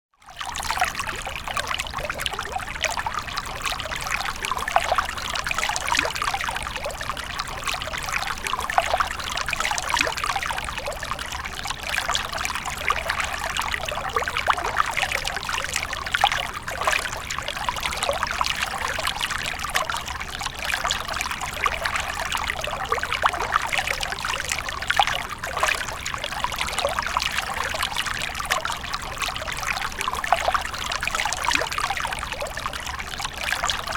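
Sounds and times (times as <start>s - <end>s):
brook babbling over stones: 0.3s - 33.9s.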